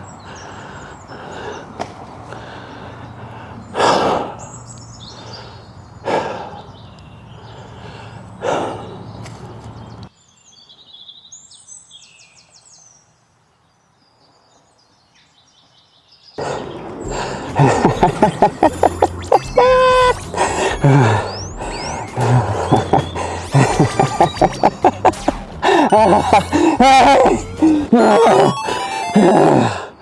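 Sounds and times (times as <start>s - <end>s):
birds chirping: 0.0s - 13.1s, 13.8s - 30.0s
outdoor ambience: 0.0s - 15.4s, 16.4s - 30.0s
heavy breathy exhales: 0.2s - 9.2s, 16.4s - 23.7s, 25.1s - 26.8s.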